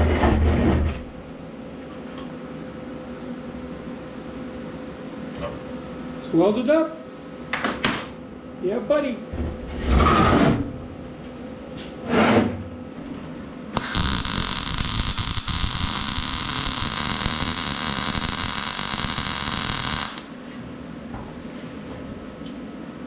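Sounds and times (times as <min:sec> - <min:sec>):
welding arc crackling hiss: 0:13.8 - 0:21.6.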